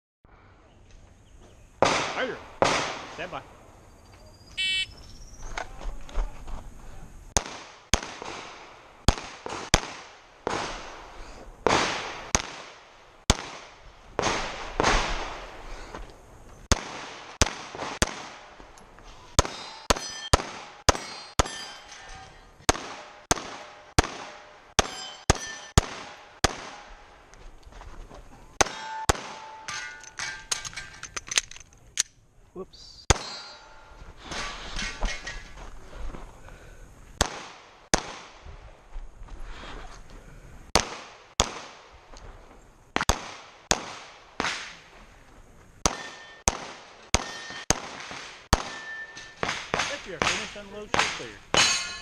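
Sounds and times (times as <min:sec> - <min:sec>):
pistol shots: 0:01.8 - 0:03.4, 0:07.4 - 0:10.9, 0:11.6 - 0:15.4, 0:16.7 - 0:18.5, 0:19.4 - 0:21.7, 0:22.6 - 0:27.0, 0:28.6 - 0:30.0, 0:33.1 - 0:33.4, 0:37.2 - 0:38.4, 0:40.7 - 0:41.9, 0:43.0 - 0:44.8, 0:45.8 - 0:51.8
shot timer beep: 0:04.6 - 0:04.9
steel targets clanging: 0:19.4 - 0:23.3, 0:24.8 - 0:25.8, 0:28.6 - 0:31.4, 0:33.1 - 0:35.6, 0:45.9 - 0:46.5, 0:47.2 - 0:47.7, 0:48.6 - 0:52.0.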